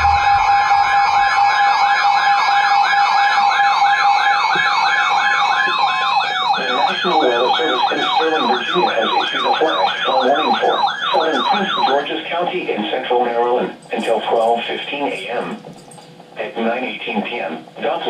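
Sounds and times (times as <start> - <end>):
steady alert tone: 0.0 - 1.9
electronic siren yelping: 0.0 - 12.2
lower-pitched yelping siren: 0.0 - 12.2.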